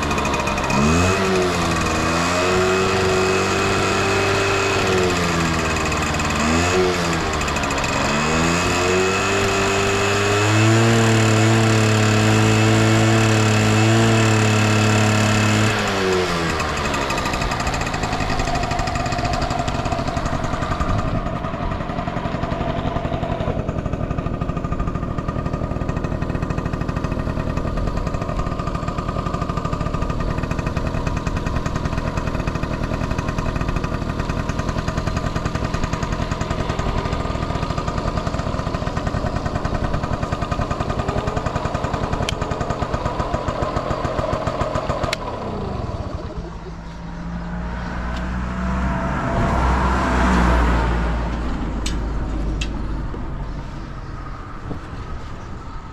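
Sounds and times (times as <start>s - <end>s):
scooter engine running: 0.0s - 55.9s
low rumble: 46.2s - 55.9s.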